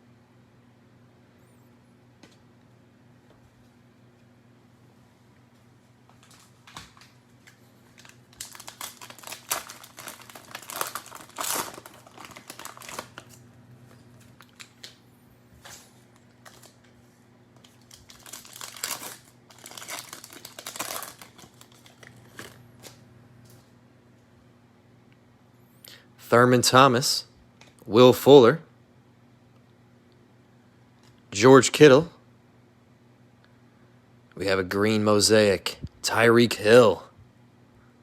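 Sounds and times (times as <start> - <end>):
cellophane wrapper crinkling: 6.2 - 15.0, 15.6 - 23.0.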